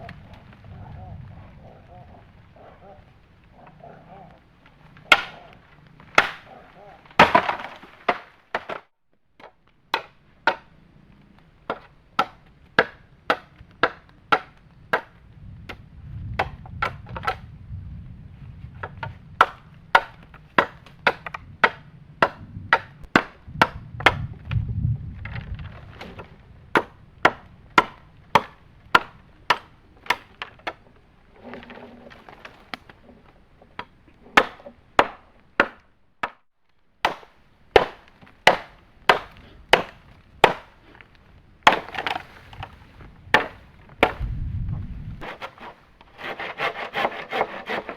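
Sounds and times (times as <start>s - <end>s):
wood chopping: 4.7s - 10.7s, 11.6s - 15.8s, 16.4s - 17.4s, 18.8s - 24.6s, 25.2s - 36.4s, 37.0s - 44.3s, 45.2s - 47.9s.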